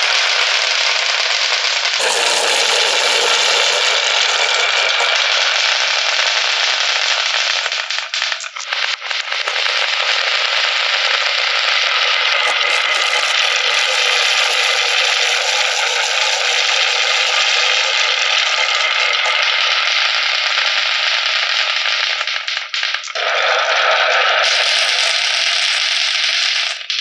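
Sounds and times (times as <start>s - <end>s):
marbles clattering down wooden run: 0.0s - 5.6s, 9.4s - 11.2s, 12.2s - 20.2s, 24.4s - 27.0s.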